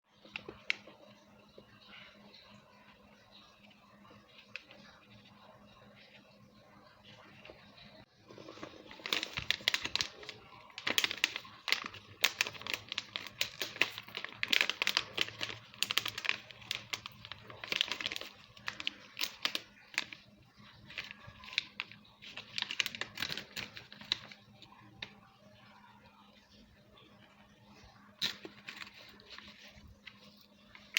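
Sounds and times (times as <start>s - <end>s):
candy wrapper crinkling: 8.3s - 25.8s, 27.9s - 30.9s.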